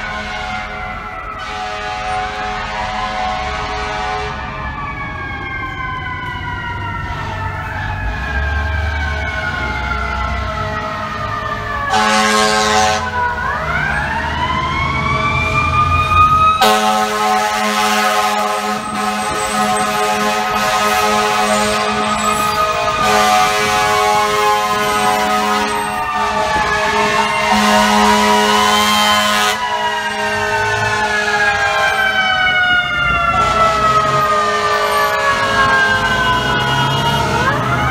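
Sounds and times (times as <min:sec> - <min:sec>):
fire truck air horn blasting: 0:00.0 - 0:04.8, 0:09.2 - 0:13.9, 0:16.1 - 0:37.9
siren winding: 0:24.0 - 0:26.2.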